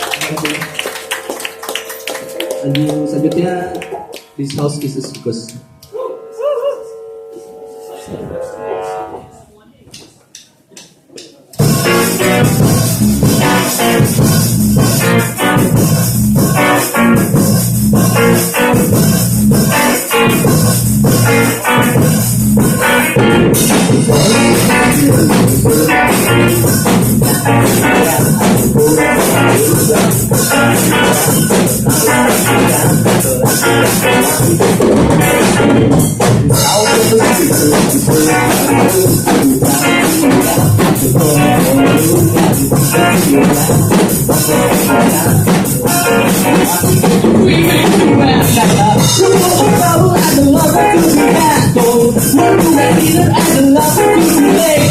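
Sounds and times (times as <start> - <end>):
bass guitar: 0.0 - 9.6, 11.6 - 54.9
electric guitars: 0.0 - 9.6, 11.6 - 54.9
drum kit: 11.5 - 54.9.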